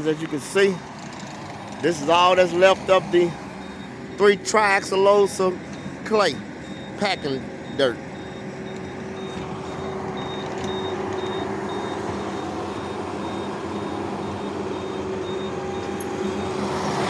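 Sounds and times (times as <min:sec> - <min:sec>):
high electronic warning beep: 0:00.0 - 0:00.8, 0:01.9 - 0:17.0
skid steer engine running: 0:00.0 - 0:17.0.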